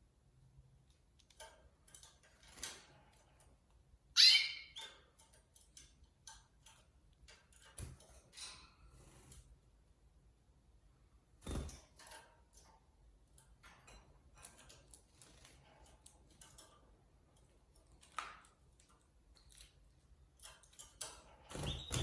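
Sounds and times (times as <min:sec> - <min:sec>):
sharp bird chirp: 0:04.2 - 0:04.8.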